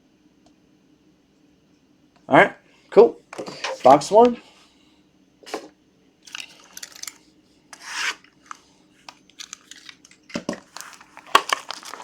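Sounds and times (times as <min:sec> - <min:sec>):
cardboard and plastic wrap scraping: 0:07.8 - 0:08.3, 0:10.6 - 0:12.0.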